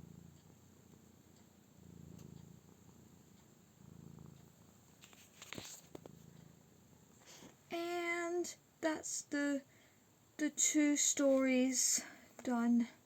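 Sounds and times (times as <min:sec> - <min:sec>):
cat purring: 0:00.0 - 0:09.9.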